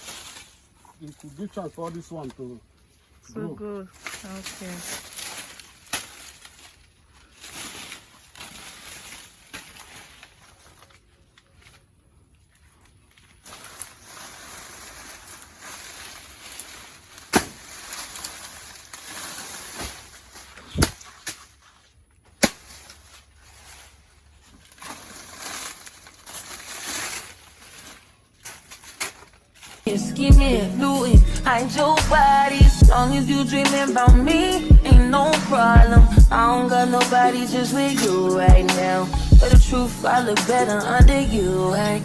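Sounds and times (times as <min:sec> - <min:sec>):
outdoor rustling and handling: 0:00.0 - 0:42.0.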